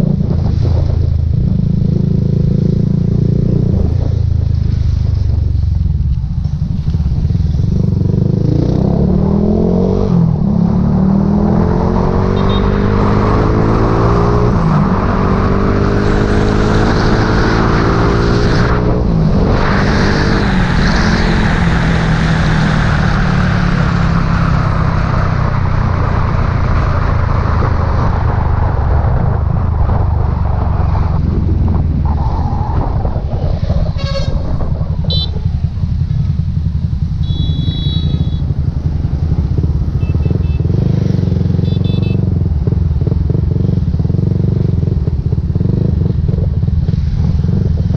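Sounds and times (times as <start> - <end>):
wind noise on microphone: 0.0 - 47.9
motorbike engine running: 34.0 - 47.9.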